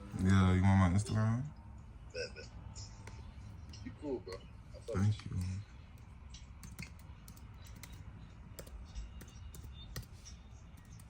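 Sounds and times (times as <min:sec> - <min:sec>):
typing clicks: 0:05.4 - 0:11.0.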